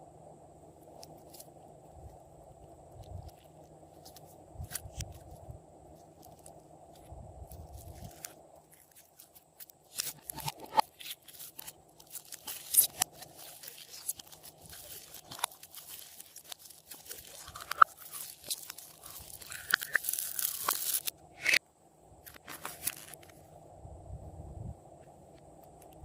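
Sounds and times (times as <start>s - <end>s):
slime crackling and popping: 7.7s - 21.6s.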